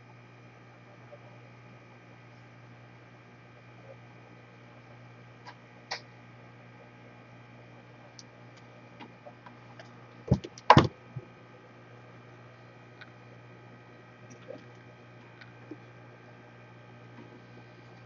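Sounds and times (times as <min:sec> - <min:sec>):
steady electrical hum: 0:00.0 - 0:18.0
louder knocks: 0:10.3 - 0:11.3.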